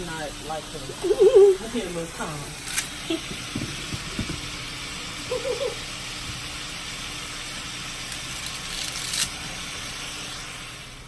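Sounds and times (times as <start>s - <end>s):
meat and onions sizzling in pan: 0.0s - 11.0s
soft knocks: 3.3s - 4.5s.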